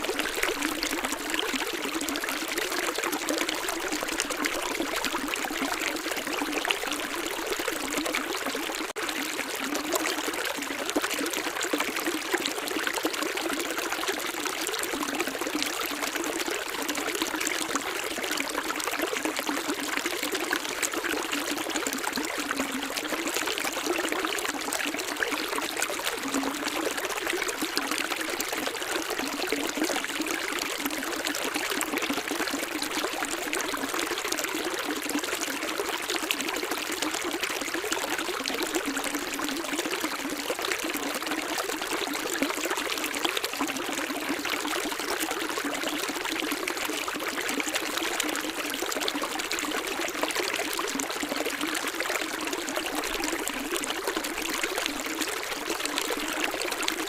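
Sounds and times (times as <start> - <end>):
water trickling and splashing: 0.0 - 57.0.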